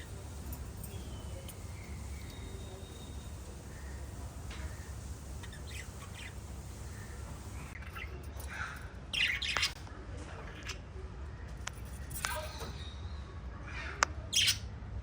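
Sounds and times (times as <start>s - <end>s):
lovebirds chirping: 0.0s - 7.8s.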